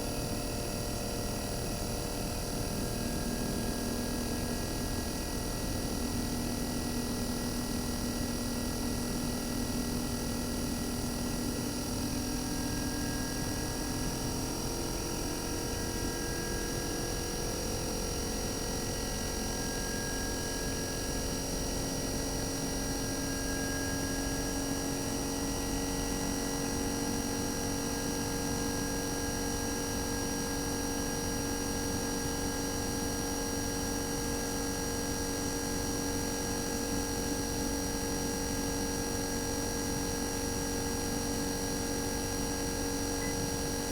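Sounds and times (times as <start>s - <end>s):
air conditioner compressor humming: 24.6s - 43.9s.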